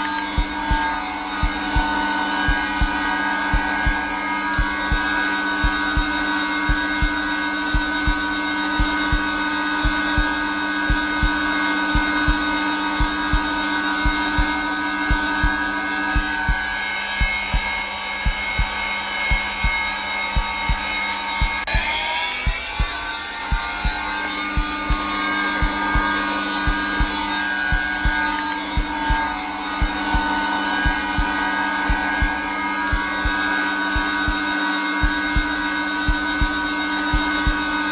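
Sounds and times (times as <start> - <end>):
heartbeat thumping: 0.0 - 37.9
vacuum cleaner running: 0.0 - 37.9.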